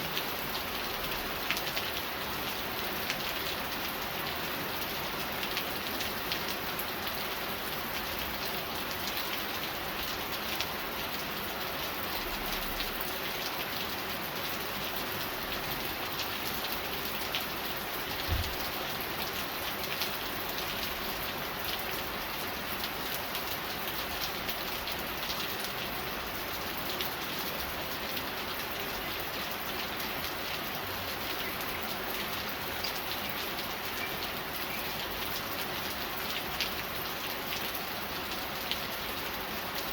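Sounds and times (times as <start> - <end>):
steady rain pattering: 0.0 - 39.9
low thump: 18.3 - 18.6.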